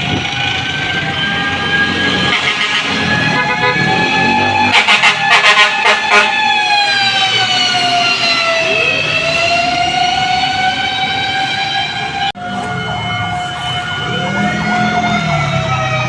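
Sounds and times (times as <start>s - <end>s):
fire truck siren wailing: 0.0s - 16.0s
second siren winding up: 6.0s - 16.0s.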